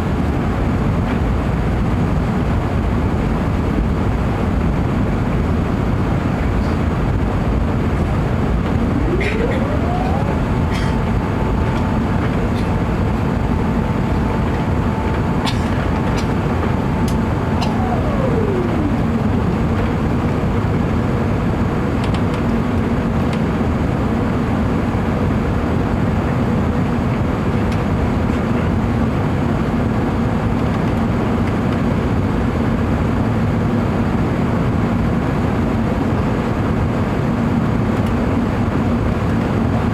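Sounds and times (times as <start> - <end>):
aircraft cabin engine noise: 0.0 - 39.9
mechanical whine: 6.5 - 21.7.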